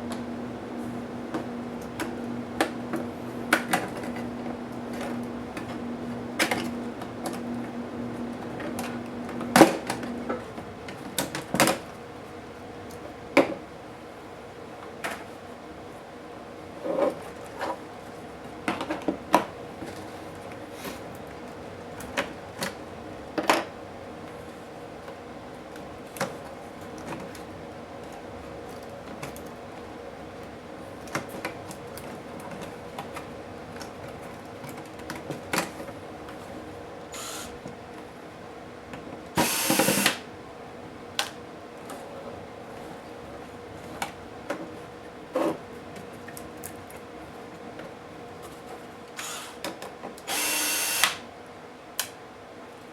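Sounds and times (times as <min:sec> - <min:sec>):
steady low hum: 0:00.0 - 0:10.5.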